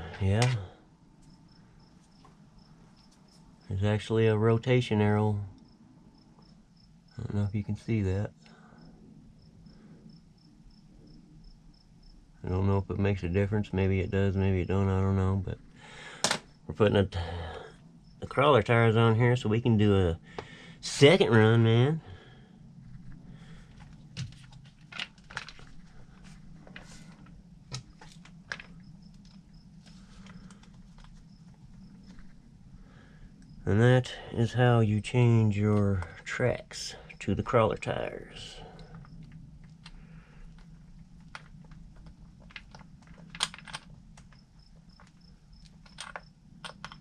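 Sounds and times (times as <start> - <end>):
steady low hum: 0.0 - 47.0
plastic parts clicking and tapping: 16.2 - 16.5, 23.7 - 29.4, 38.8 - 47.0
hand tools clicking on hardware: 45.7 - 47.0.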